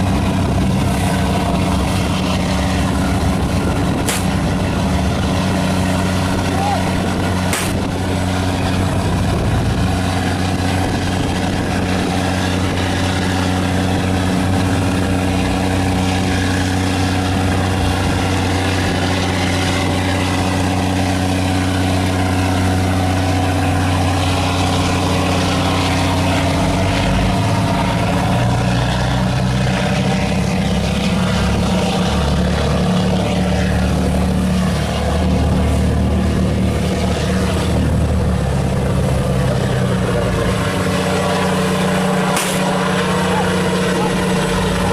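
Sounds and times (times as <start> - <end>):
boat engines droning: 0.0 - 44.9.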